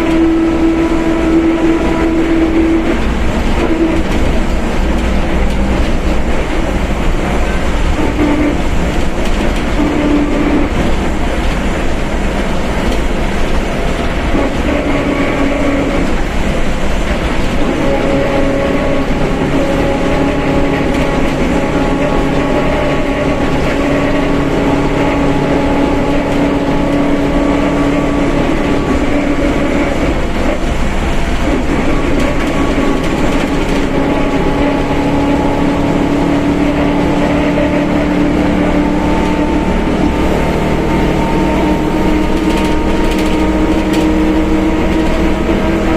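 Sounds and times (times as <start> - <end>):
diesel engine low rumble: 0.0 - 45.9
differential whine: 0.0 - 45.9.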